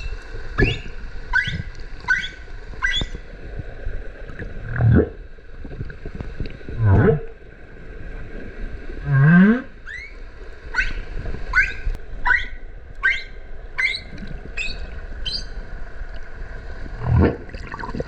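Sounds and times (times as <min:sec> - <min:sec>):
whale short rising chirps: 0:00.6 - 0:03.2, 0:09.1 - 0:15.6
whale low rising call: 0:06.8 - 0:07.4, 0:09.0 - 0:15.6.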